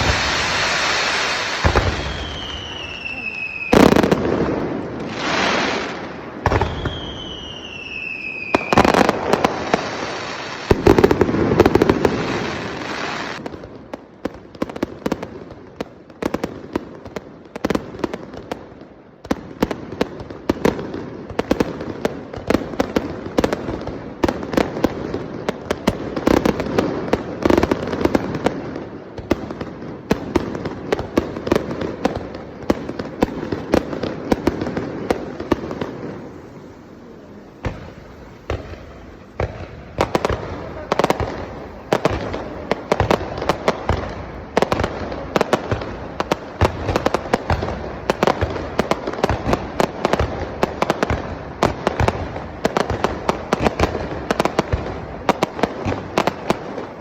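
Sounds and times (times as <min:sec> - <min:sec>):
falling firework whistles: 0:00.0 - 0:13.5.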